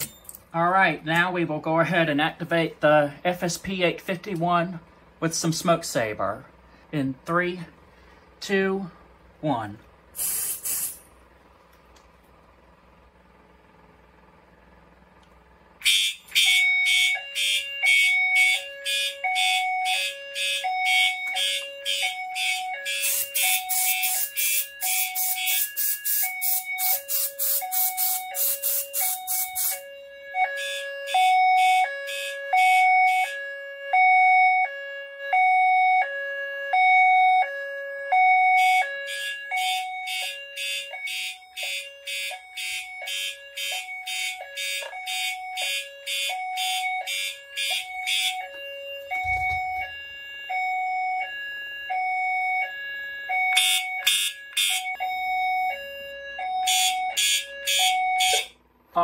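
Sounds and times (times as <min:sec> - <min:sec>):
two-tone fire alarm signal: 0:00.0 - 0:00.4, 0:15.8 - 0:59.0
harsh horn pulsing: 0:15.8 - 0:35.5, 0:36.2 - 0:59.0.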